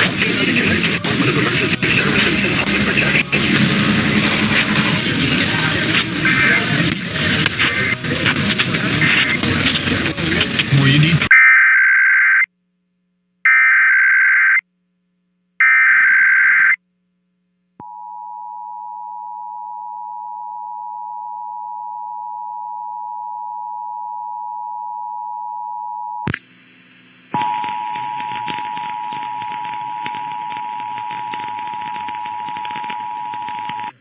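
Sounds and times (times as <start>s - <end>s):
heavy crackling noise: 0.0s - 11.3s, 27.6s - 34.0s
faint hum: 16.8s - 34.0s.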